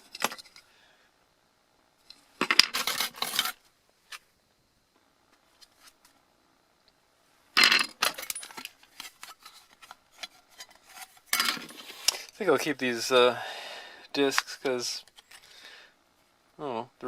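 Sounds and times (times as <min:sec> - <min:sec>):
small metal parts clinking: 0:07.6 - 0:09.6.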